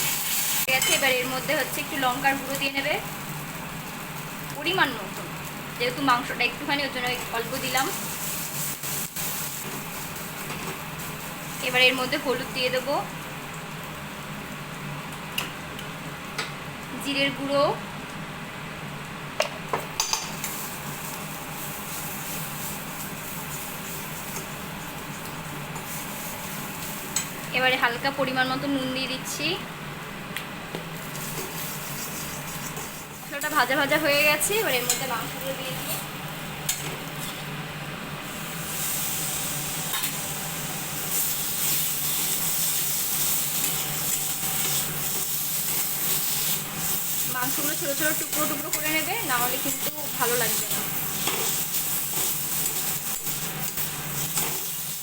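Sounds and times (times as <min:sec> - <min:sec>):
paste frying in oil sizzling: 0:00.0 - 0:55.0
metal spoon clinking on pan: 0:00.7 - 0:01.1.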